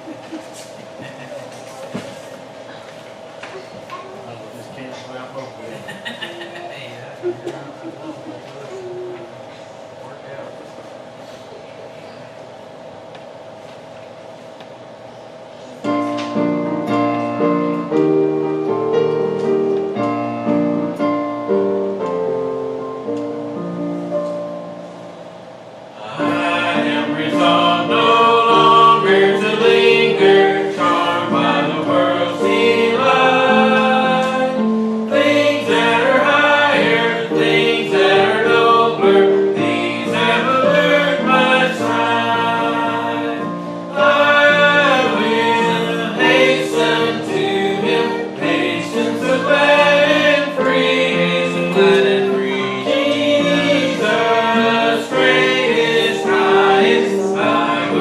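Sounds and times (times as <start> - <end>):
instrumental accompaniment: 15.8 - 25.5, 26.2 - 58.0
congregation singing a hymn: 25.9 - 58.0.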